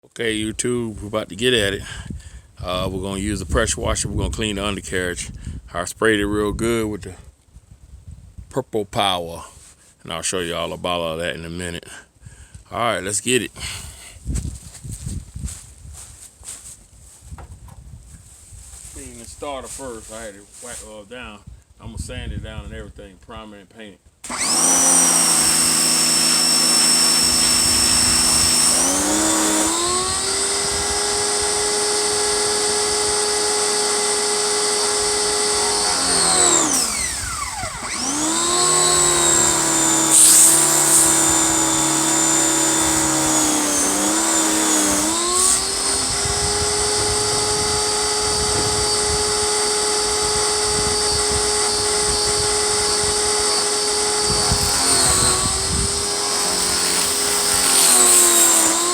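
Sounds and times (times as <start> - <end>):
pressure washer motor drone: 24.2 - 58.9.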